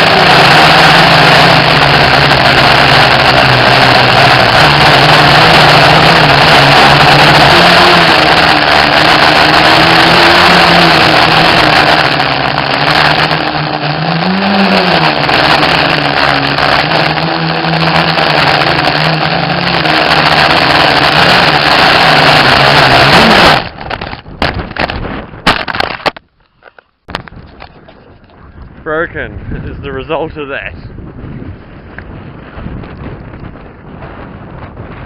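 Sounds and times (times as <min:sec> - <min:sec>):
quadcopter motors whining: 0:00.0 - 0:23.9
rushing air: 0:00.0 - 0:35.0.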